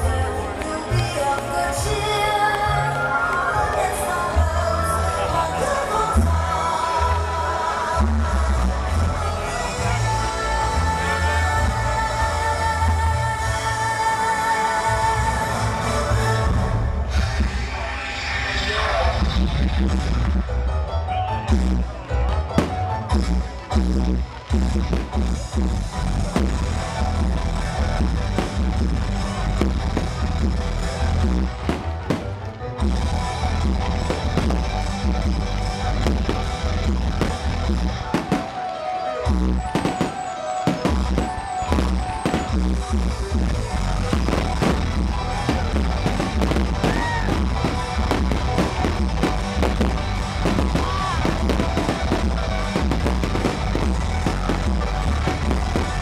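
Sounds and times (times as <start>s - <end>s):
background music with steady beat: 19.4s - 56.0s
fireworks crackling and popping: 22.5s - 56.0s.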